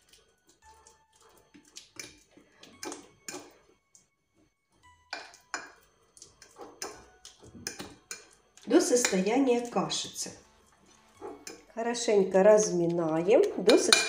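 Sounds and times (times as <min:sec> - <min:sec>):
fork mashing banana: 0:00.0 - 0:03.7, 0:05.2 - 0:09.3, 0:10.4 - 0:11.8
fork clinking and scraping dish: 0:01.1 - 0:03.7, 0:05.1 - 0:09.3, 0:10.8 - 0:11.7, 0:13.6 - 0:14.0.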